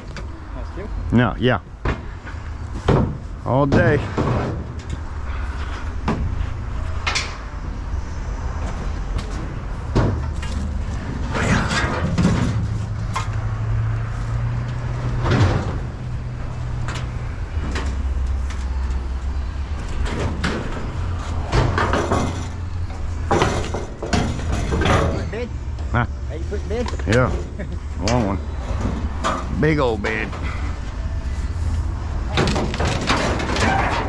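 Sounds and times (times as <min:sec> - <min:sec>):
engine humming: 0:00.0 - 0:34.0
scrap metal clanking: 0:19.8 - 0:25.5, 0:32.3 - 0:34.0.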